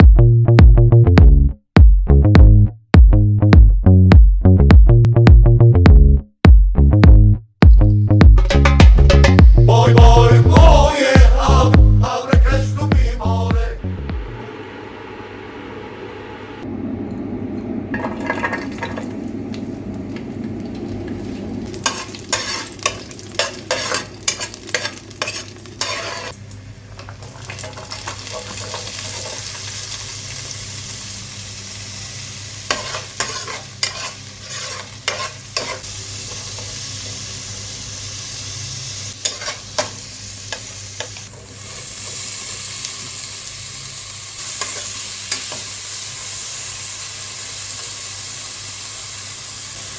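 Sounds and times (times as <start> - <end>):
food sizzling in a pan: 8.4 - 12.3, 17.9 - 49.9.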